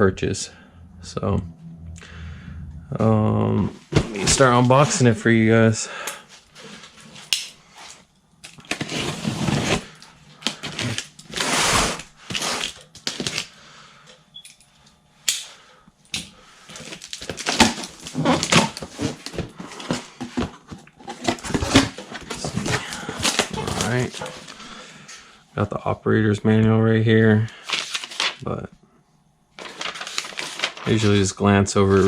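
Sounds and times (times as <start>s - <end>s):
cardboard rustling and crinkling: 16.8s - 24.7s, 29.6s - 31.2s.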